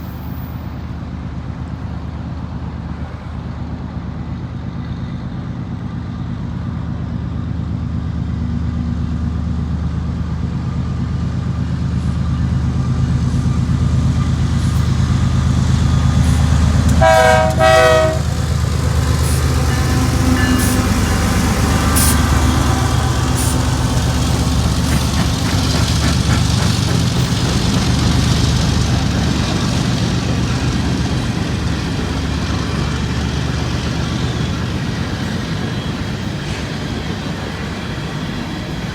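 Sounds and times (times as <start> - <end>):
diesel locomotive engine rumble: 0.0 - 38.9
train horn blasts: 16.9 - 23.6.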